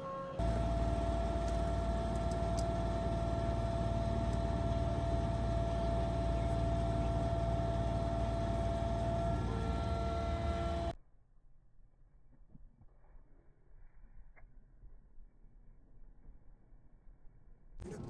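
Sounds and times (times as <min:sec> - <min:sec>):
faint steady whine: 0:00.0 - 0:11.0
car rumbling on road: 0:00.4 - 0:11.0.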